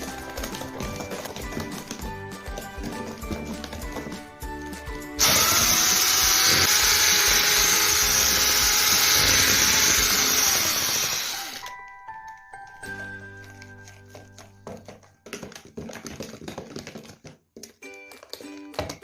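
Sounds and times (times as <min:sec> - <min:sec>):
background music: 0:00.0 - 0:16.4, 0:17.6 - 0:19.0
electric kitchen mixer whirring: 0:05.2 - 0:11.7.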